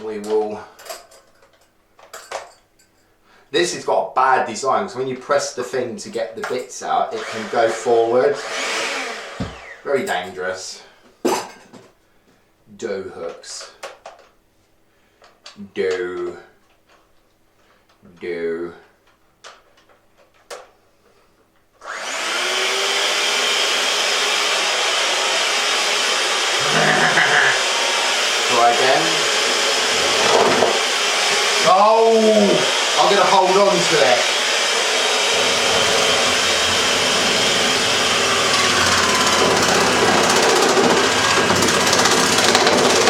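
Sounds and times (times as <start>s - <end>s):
food mixer motor whirring: 7.1s - 9.9s, 21.8s - 43.0s.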